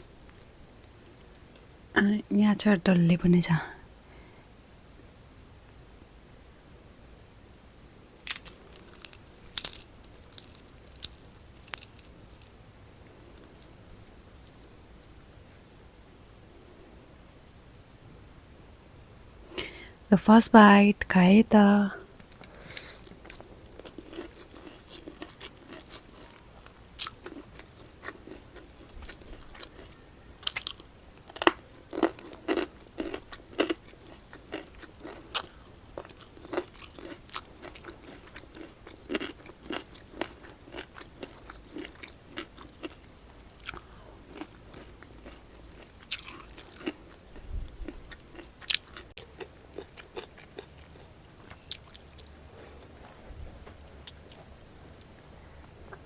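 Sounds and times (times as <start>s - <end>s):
crunching and wet chewing: 8.2s - 15.9s, 22.2s - 56.0s.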